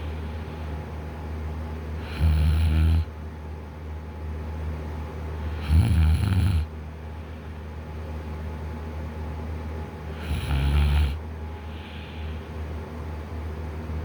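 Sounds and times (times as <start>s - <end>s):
man snoring: 2.0s - 3.1s, 5.5s - 6.7s, 10.2s - 11.2s.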